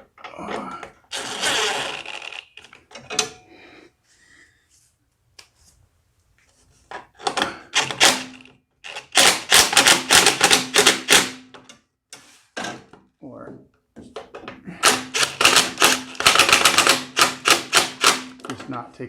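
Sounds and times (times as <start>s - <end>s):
impact driver hammering: 7.8s - 11.5s, 14.8s - 18.5s.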